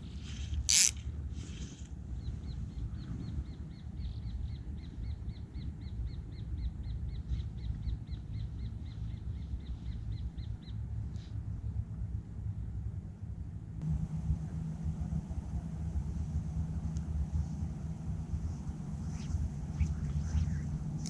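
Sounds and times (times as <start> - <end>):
low rumble: 13.8 - 21.0.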